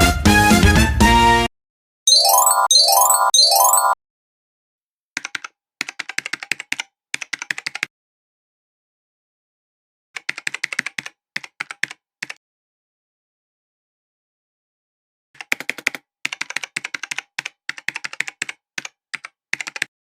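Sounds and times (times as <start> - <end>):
keyboard typing: 2.1 - 4.0, 5.2 - 7.8, 10.2 - 12.4, 15.4 - 19.9
rising chimes: 2.1 - 4.0.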